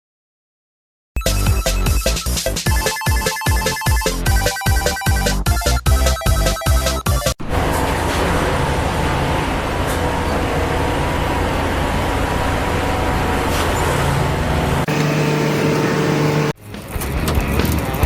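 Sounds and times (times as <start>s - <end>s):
steady vehicle hum: 7.4s - 16.6s
vehicle road and engine noise: 7.4s - 18.0s.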